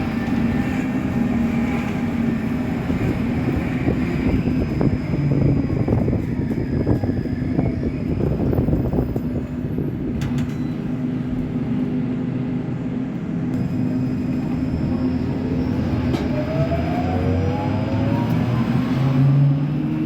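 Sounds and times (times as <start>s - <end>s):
bus diesel engine running: 0.0s - 20.0s
engine whine rising in pitch: 13.6s - 20.0s.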